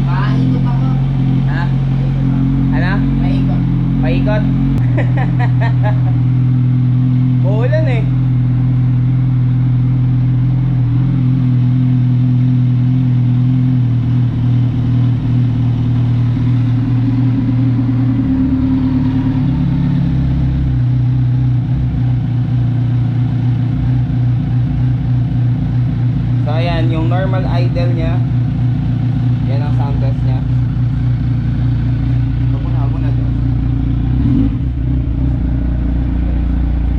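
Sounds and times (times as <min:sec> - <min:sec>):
motorcycle engine idling: 0:00.0 - 0:36.9.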